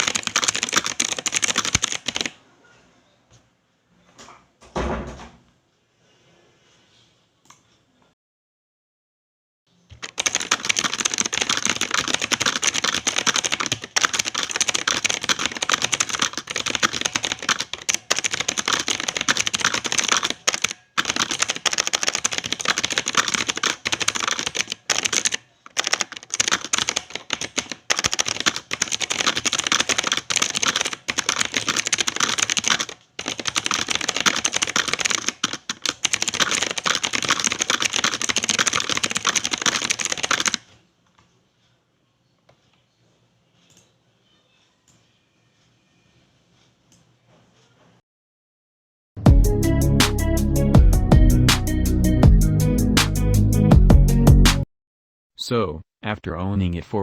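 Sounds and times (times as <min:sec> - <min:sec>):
fast typing on keyboard: 0:00.0 - 0:02.4, 0:09.9 - 0:40.7.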